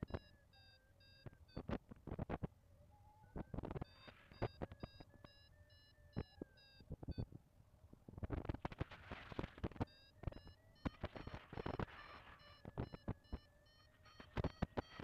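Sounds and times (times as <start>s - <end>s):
variometer rapid beeps: 0.0s - 1.7s, 3.8s - 7.3s, 9.8s - 15.0s.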